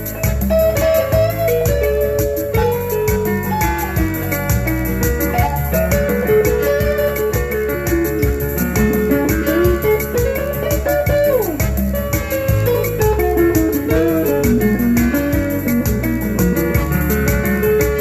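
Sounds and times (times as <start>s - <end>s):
instrumental song melody: 0.0s - 18.0s.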